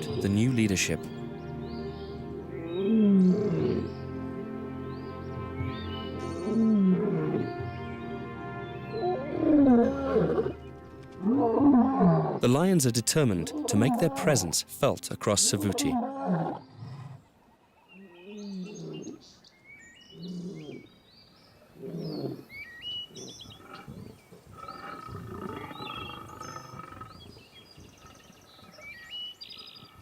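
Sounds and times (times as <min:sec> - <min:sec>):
birds chirping faintly: 0:00.0 - 0:11.3, 0:12.2 - 0:30.0
lions roaring: 0:23.7 - 0:27.2.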